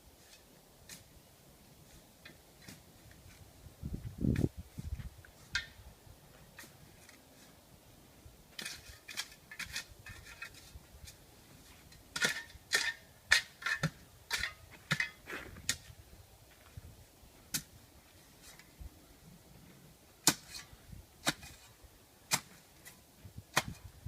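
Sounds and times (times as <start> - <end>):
digging tools striking soil: 8.6 - 11.2, 12.1 - 16.0, 20.2 - 23.9.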